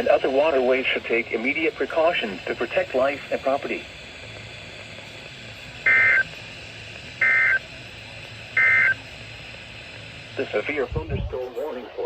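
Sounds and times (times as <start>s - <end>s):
faint radio hum and hiss: 0.0s - 12.0s
warbling digital data tones: 5.1s - 6.4s, 7.1s - 7.9s, 8.5s - 12.0s.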